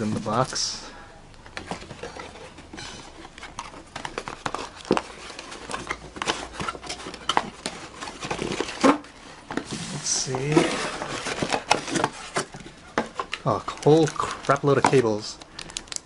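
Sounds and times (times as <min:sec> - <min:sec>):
hands rummaging in cardboard box: 0:01.6 - 0:15.3
packaging crinkling: 0:01.7 - 0:16.0
small clicks and knocks: 0:12.0 - 0:16.0.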